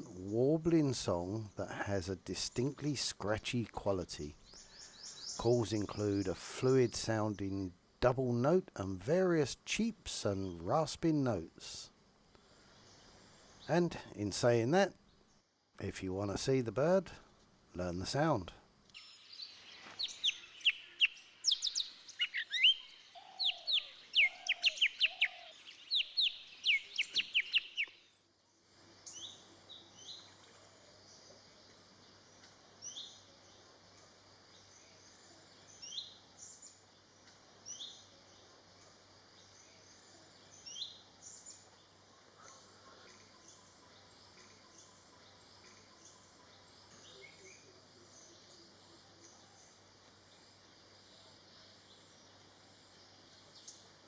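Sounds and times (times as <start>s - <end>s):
faint steady hum: 0.0s - 54.0s
bird whistled song: 19.0s - 28.0s.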